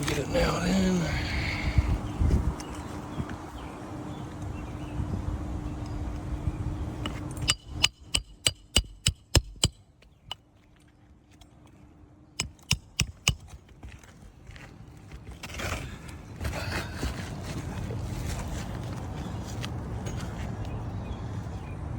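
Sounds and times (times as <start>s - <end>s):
hammer striking roofing nails: 7.4s - 9.8s, 12.4s - 13.6s.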